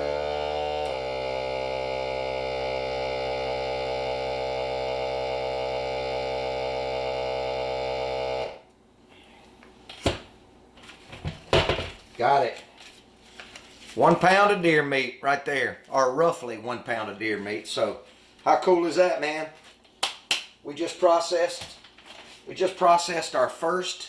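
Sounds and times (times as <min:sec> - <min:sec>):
appliance motor humming: 0:00.0 - 0:08.6.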